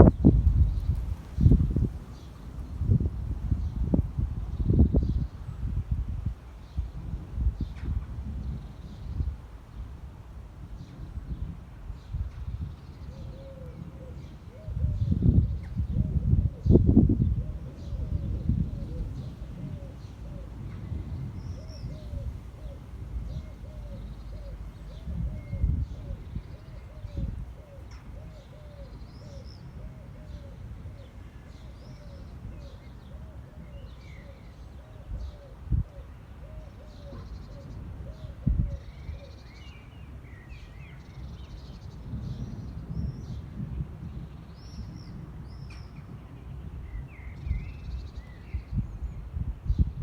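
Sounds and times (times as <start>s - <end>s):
dove cooing: 13.1s - 15.1s, 15.9s - 31.2s, 31.9s - 39.3s
pigeon cooing: 13.1s - 15.1s, 21.6s - 31.1s.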